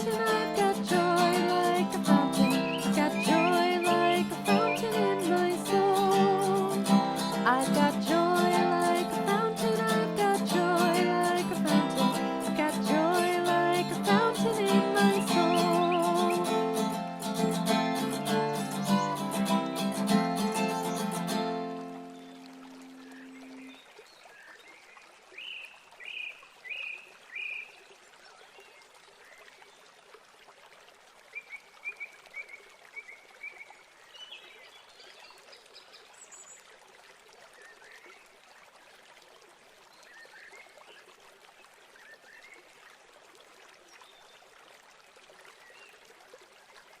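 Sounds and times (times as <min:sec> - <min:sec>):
strummed acoustic guitar chord: 0:00.0 - 0:22.1.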